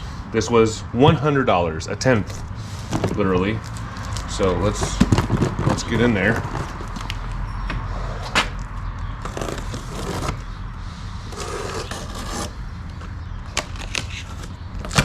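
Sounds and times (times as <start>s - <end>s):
packaging scraping and rustling: 2.3s - 7.3s, 8.1s - 10.6s, 11.3s - 15.0s.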